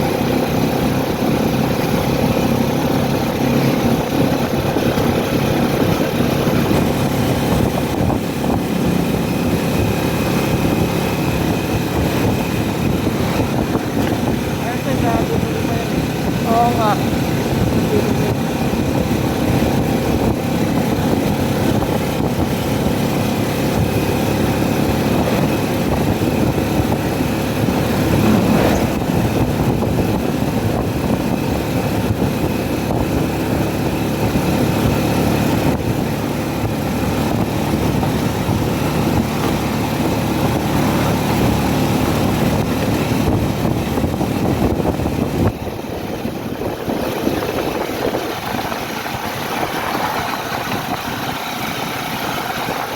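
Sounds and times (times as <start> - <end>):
vehicle engine running: 0.0 - 52.9
dense even noise: 26.2 - 31.1.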